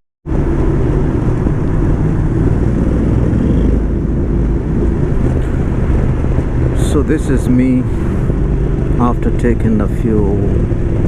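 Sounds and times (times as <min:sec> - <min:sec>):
road noise: 0:00.2 - 0:11.0
motorcycle engine running: 0:00.5 - 0:07.2.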